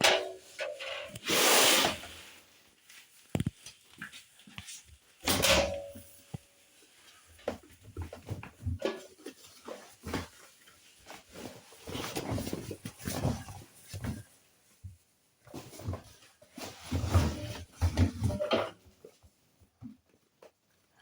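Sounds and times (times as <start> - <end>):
knocks and rustles of drum load: 0.0 - 1.2, 7.4 - 14.3, 15.4 - 19.0.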